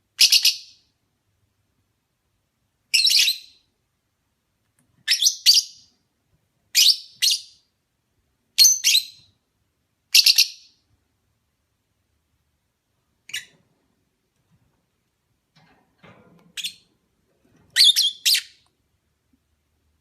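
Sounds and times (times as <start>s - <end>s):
lovebird chirping: 0.2s - 0.9s, 2.9s - 3.7s, 5.0s - 5.9s, 6.7s - 7.7s, 8.6s - 9.4s, 10.1s - 10.8s, 13.2s - 13.6s, 16.6s - 16.9s, 17.7s - 18.7s.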